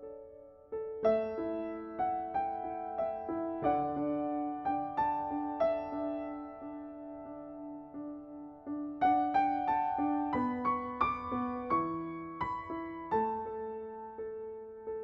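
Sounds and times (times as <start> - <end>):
soft piano music: 0.0 - 15.0.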